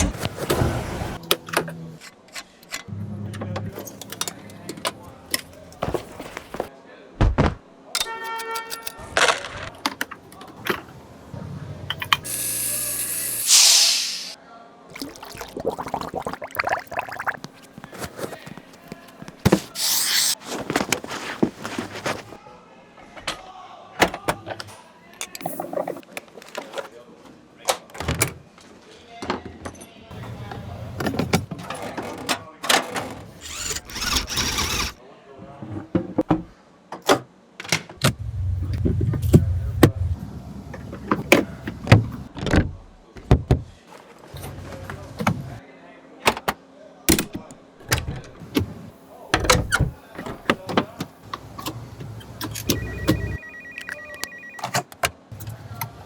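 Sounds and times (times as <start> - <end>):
clicks and knocks of tools: 1.2 - 2.9, 8.0 - 10.8
short loud hiss: 13.2 - 14.4
low motor hum: 38.0 - 42.2.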